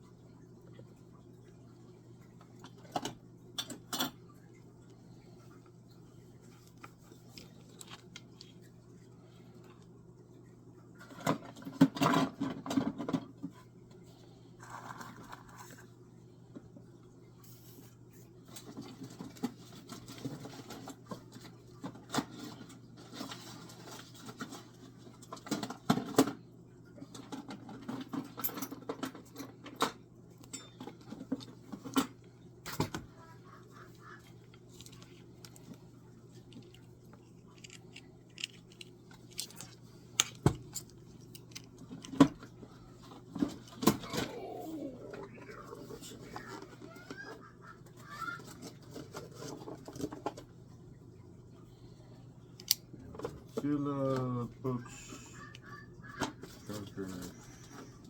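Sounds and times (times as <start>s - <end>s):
low steady hum: 0.0s - 58.0s
small hard objects clattering: 36.4s - 42.4s.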